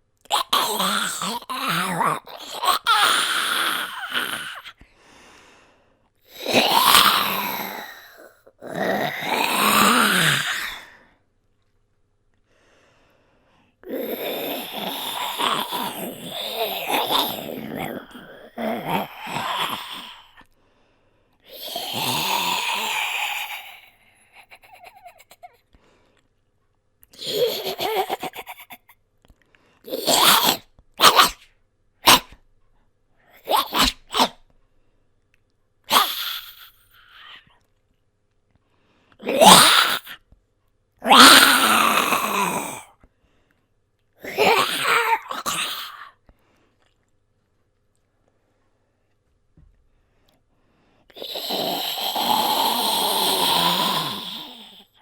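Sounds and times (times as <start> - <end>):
person growling and grunting: 0.3 - 4.8, 6.3 - 11.0, 13.8 - 20.5, 21.5 - 25.6, 27.1 - 28.9, 29.9 - 31.4, 32.0 - 32.4, 33.4 - 34.4, 35.9 - 37.5, 39.2 - 40.2, 41.0 - 43.0, 44.2 - 46.2, 51.1 - 55.0.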